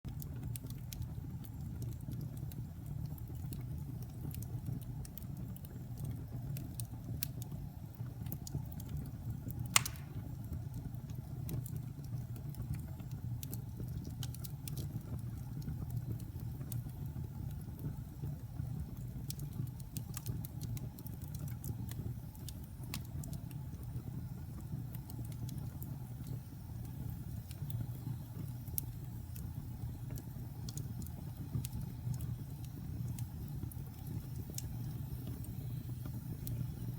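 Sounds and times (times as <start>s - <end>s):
fire crackling and popping: 0.1s - 36.9s
fire rumbling: 0.1s - 36.9s.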